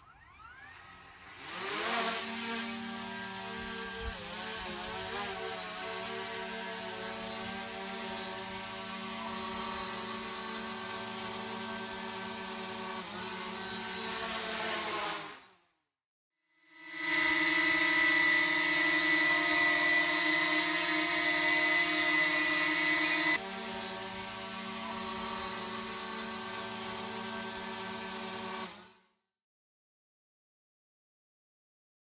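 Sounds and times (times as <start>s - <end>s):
drone propellers whining: 0.0s - 5.6s, 16.8s - 26.1s.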